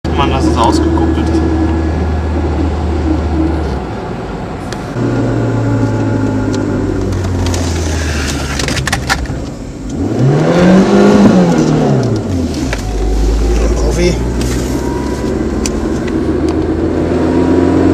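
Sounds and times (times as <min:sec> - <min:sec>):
car engine idling and revving: 0:00.0 - 0:17.9.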